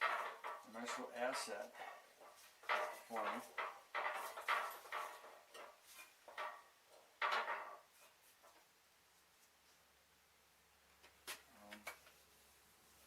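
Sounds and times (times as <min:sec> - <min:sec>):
metal parts knocking and clinking: 0:00.0 - 0:07.9.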